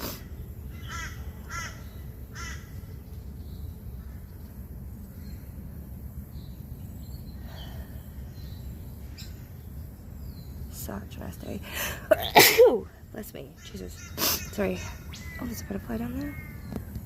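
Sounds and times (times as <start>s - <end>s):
steady low rumble: 0.0s - 17.0s
crow cawing: 0.8s - 2.7s.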